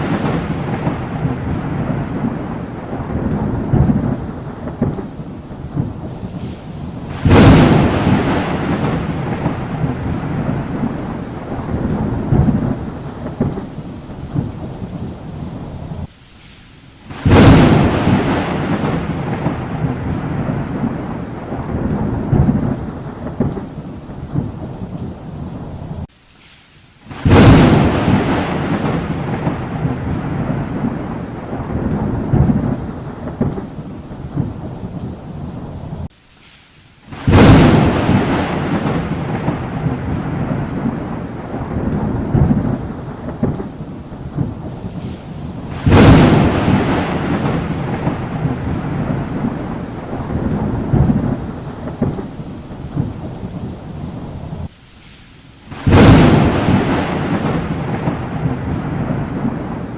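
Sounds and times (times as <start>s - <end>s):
thunder claps rumbling: 0.0s - 16.1s, 17.1s - 26.1s, 27.1s - 36.1s, 37.1s - 54.7s, 55.7s - 59.9s
steady rain: 0.0s - 59.9s.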